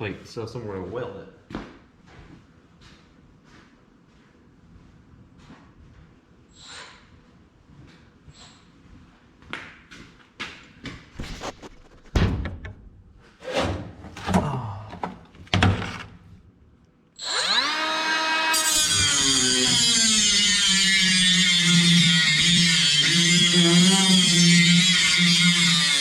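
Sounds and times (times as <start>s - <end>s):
cutoff grinder whining: 17.2s - 26.0s
grinder wheel cutting sheet metal: 17.2s - 26.0s.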